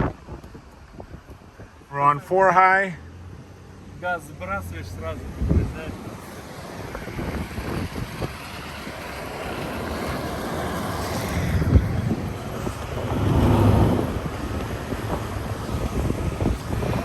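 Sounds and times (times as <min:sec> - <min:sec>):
wind buffeting microphone: 0:00.0 - 0:02.0, 0:05.0 - 0:17.0
tyres rumbling on sand: 0:04.0 - 0:17.0
truck engine running: 0:04.5 - 0:17.0.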